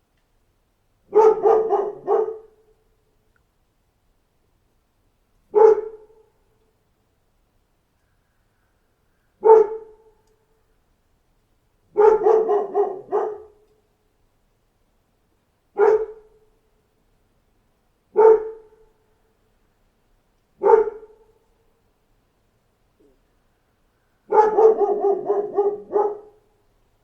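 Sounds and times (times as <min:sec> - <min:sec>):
dog barking: 0:01.1 - 0:02.7, 0:05.5 - 0:06.3, 0:09.4 - 0:10.2, 0:11.9 - 0:13.6, 0:15.8 - 0:16.4, 0:18.1 - 0:18.9, 0:20.6 - 0:21.4, 0:24.3 - 0:26.5.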